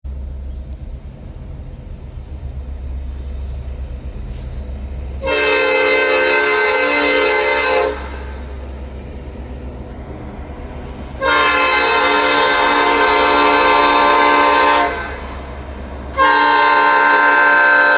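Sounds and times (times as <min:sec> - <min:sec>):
train rumble: 0:00.0 - 0:17.9
train horn blast: 0:05.2 - 0:08.5, 0:11.2 - 0:15.4, 0:16.1 - 0:17.9.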